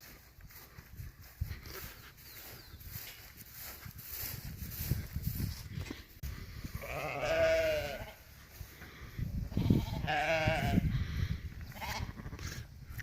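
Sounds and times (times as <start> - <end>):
sheep bleating: 6.8 - 8.2, 9.6 - 10.8, 11.7 - 12.5.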